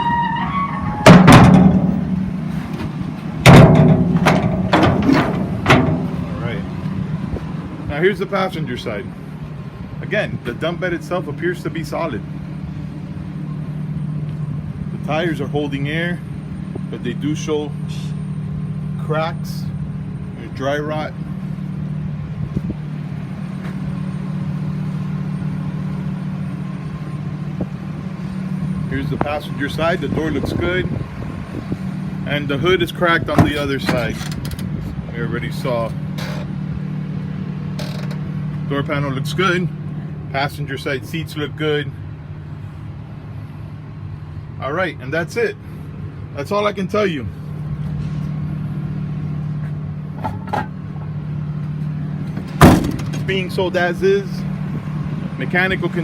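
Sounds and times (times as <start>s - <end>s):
engine idling: 0.0s - 56.0s
loud sharp bangs and knocks: 1.0s - 2.2s, 3.4s - 6.3s, 52.5s - 53.2s
steady low hum: 1.0s - 8.3s.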